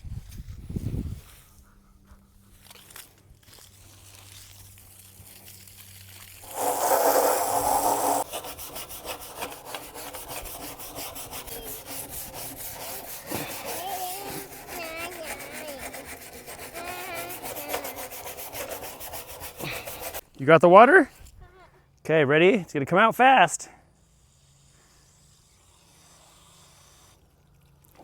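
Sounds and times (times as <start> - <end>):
stiff brush scrubbing: 2.4 - 20.4.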